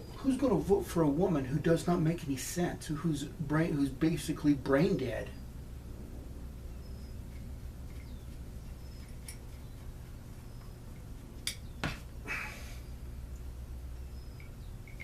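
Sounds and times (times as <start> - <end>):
low steady hum: 0.0 - 15.0
small parts clicking: 14.4 - 15.0.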